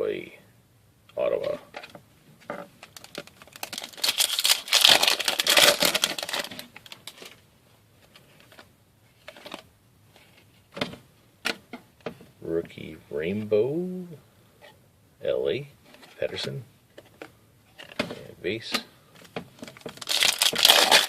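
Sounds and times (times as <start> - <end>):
foil wrapper tearing and crinkling: 2.9 - 7.2, 20.0 - 21.0.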